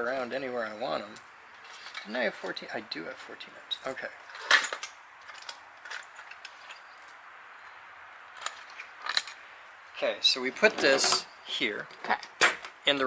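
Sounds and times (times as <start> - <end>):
metal hardware clinking: 3.7 - 7.3, 8.4 - 9.8.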